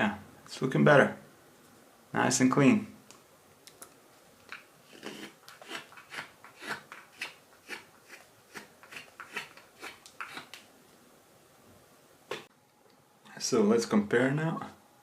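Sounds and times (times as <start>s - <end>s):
knife carving wood: 4.5s - 10.7s.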